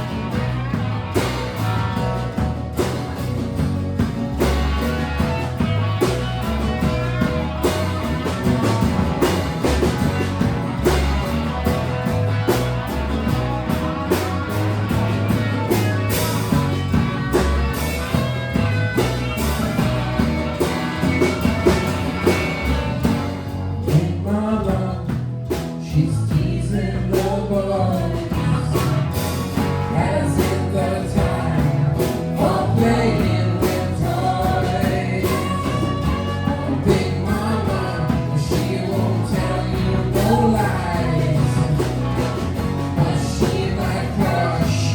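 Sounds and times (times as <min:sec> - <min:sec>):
live band playing: 0:00.0 - 0:44.9
person singing: 0:29.7 - 0:44.9.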